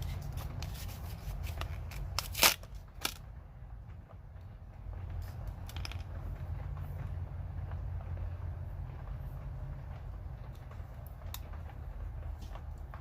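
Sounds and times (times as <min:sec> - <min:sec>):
plastic packaging crinkling: 0:00.0 - 0:03.2.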